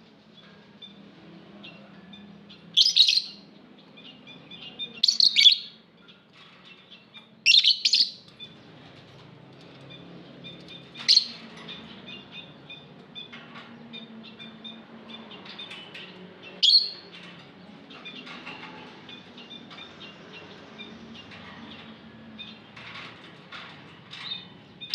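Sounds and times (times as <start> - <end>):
lovebirds twittering: 1.7 - 8.8, 9.7 - 24.9
shrill bird chirps: 2.8 - 3.5, 4.1 - 5.8, 7.5 - 8.6, 16.6 - 17.0.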